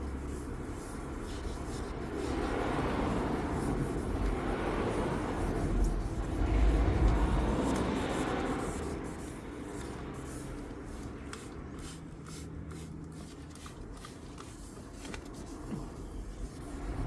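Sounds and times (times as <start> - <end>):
passing vehicle rumble: 0.0 - 10.4, 16.2 - 17.0.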